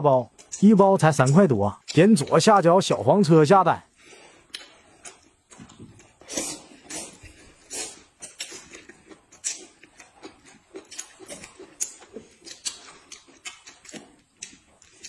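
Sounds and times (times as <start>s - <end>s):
person chewing noisily: 0.2s - 3.0s, 3.9s - 15.0s
lip smacking: 4.4s - 15.0s.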